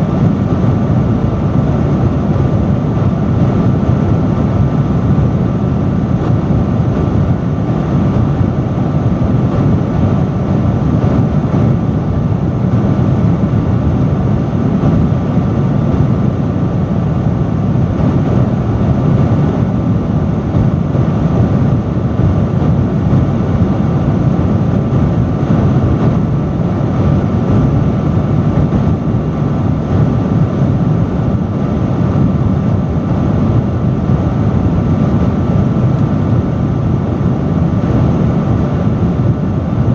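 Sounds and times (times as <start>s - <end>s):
faint steady whine: 0.0s - 39.9s
industrial fan rushing air: 0.0s - 39.9s.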